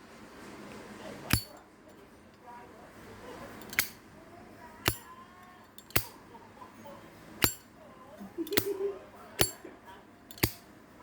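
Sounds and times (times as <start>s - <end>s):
lighter lid clinking: 1.3s - 1.6s, 3.6s - 4.0s, 4.8s - 5.1s, 5.8s - 6.2s, 7.4s - 7.7s, 8.4s - 8.8s, 9.4s - 9.6s, 10.3s - 10.7s.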